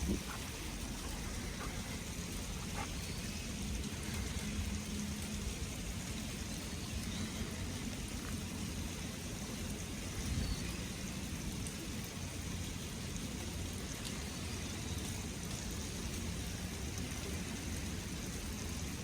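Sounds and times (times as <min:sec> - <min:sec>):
hiss of wet snow falling: 0:00.0 - 0:19.0.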